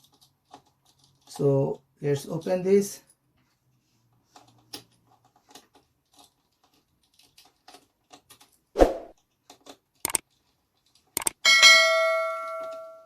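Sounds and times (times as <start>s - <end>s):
screwdriver clicks and ticks: 9.2s - 10.3s, 10.9s - 11.4s
sharp click: 10.0s - 10.2s, 11.2s - 11.4s.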